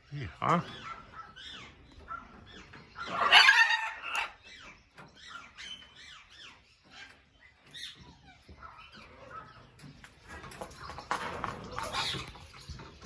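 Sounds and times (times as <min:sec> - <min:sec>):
parrot squawking: 0:03.0 - 0:04.4.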